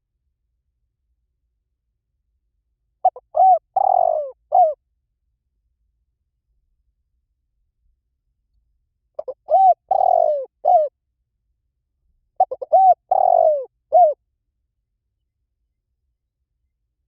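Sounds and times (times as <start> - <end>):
dove cooing: 3.0 - 4.8, 9.2 - 10.9, 12.4 - 14.2.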